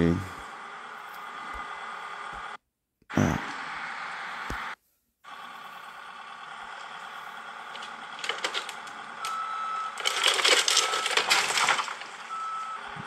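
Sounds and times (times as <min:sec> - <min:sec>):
heavy demolition machinery running: 0:05.3 - 0:13.0
clattering and rattling: 0:07.7 - 0:12.2.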